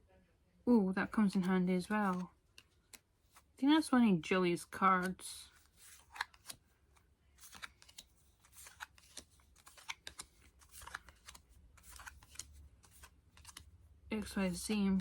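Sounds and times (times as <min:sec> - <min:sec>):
trading cards clicking and rustling: 0:01.3 - 0:03.5, 0:04.7 - 0:15.0.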